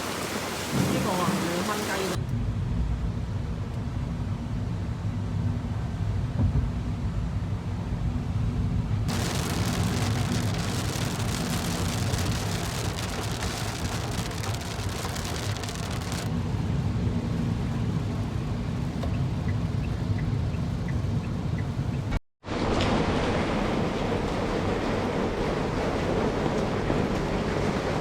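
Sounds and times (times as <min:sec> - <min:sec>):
heavy rain hissing: 0:00.0 - 0:02.2, 0:09.1 - 0:19.9
steady low rumble: 0:02.2 - 0:22.2.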